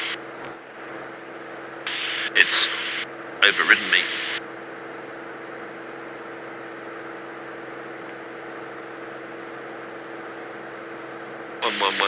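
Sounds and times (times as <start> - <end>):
propeller aircraft engine drone: 0.0 - 12.0.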